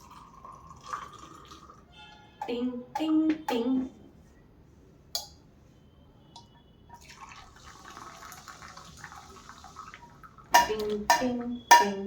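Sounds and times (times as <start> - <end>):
liquid pouring and dripping: 0.0 - 1.9, 7.0 - 11.1.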